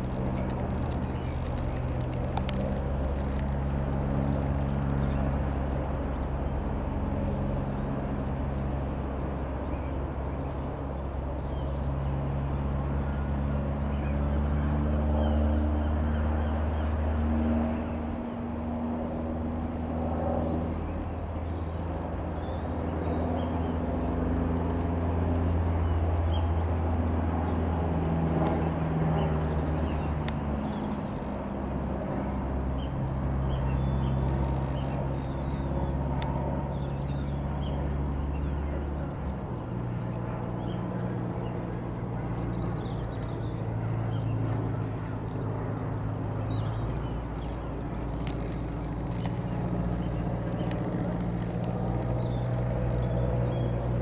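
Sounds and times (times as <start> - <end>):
airplane piston engine droning: 0.0 - 54.0
small birds chirping: 19.5 - 54.0.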